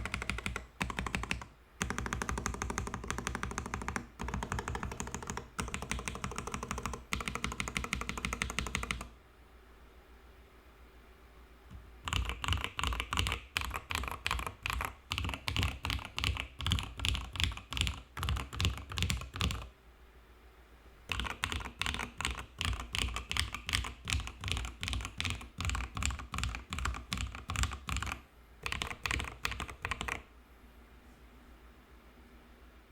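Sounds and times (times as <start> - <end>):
mechanical keyboard typing: 0.0 - 9.1, 12.0 - 19.7, 21.1 - 30.3.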